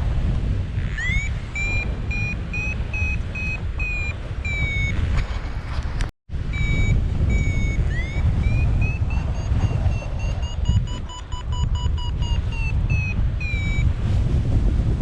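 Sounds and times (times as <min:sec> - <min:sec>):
wind noise on microphone: 0:00.0 - 0:15.0
variometer beeping: 0:00.8 - 0:05.1, 0:06.5 - 0:14.0.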